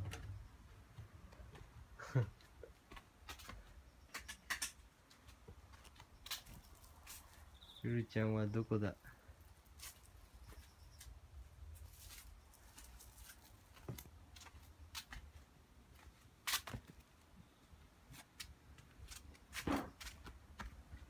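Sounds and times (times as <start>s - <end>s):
handling clicks and rustles: 2.4s - 7.4s, 11.8s - 15.2s.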